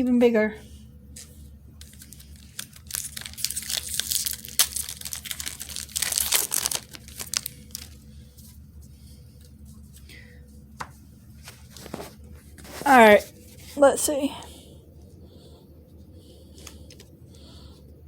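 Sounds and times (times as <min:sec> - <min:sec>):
foil wrapper crinkling and tearing: 0:01.8 - 0:08.0.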